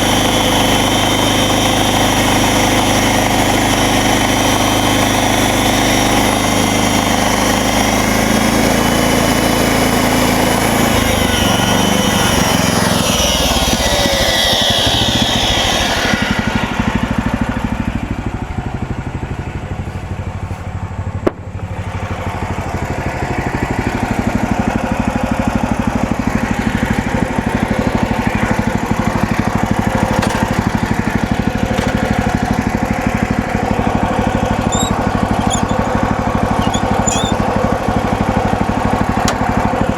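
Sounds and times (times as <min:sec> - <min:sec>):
sawmill engine running: 0:00.0 - 0:39.9
saw blade hissing through wood: 0:10.9 - 0:17.3, 0:34.1 - 0:37.4.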